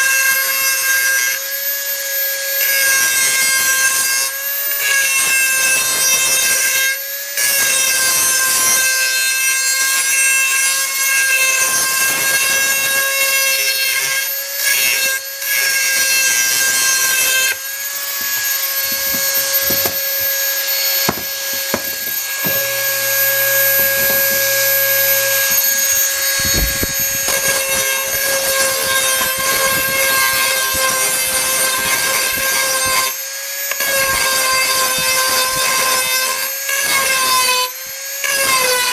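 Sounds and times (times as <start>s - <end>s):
rotary tool high whine: 0.0s - 38.8s
bit grinding metal: 7.5s - 33.1s.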